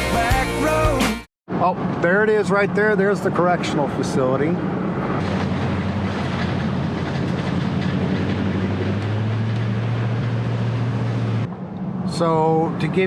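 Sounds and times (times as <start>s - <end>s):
road noise: 1.5s - 13.0s
vehicle engine drone: 1.5s - 13.0s.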